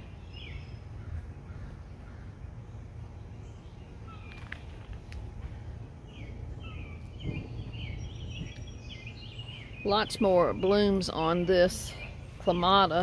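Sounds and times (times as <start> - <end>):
small birds chirping: 0.0 - 13.0
steady low rumble: 0.0 - 13.0.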